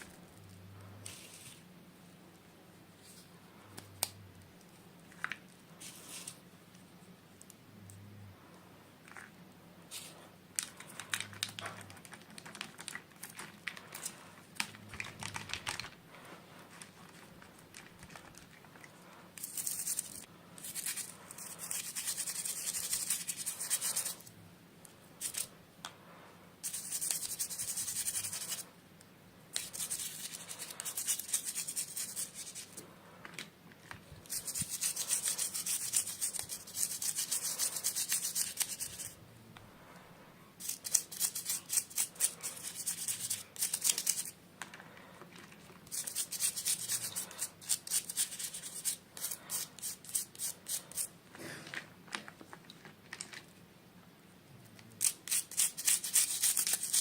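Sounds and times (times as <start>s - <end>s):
scratchy rubbing of packaging: 19.4s - 24.3s, 26.6s - 28.6s, 29.6s - 32.8s, 34.2s - 39.2s, 40.6s - 44.4s, 45.9s - 51.1s, 55.0s - 57.0s.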